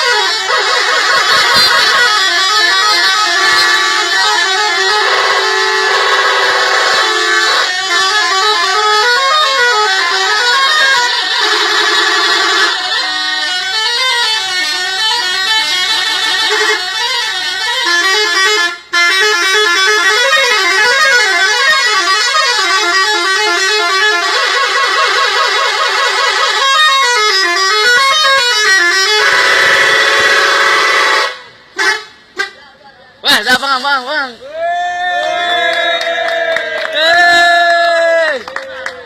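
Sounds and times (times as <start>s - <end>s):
bus musical horn melody: 0.0s - 32.6s.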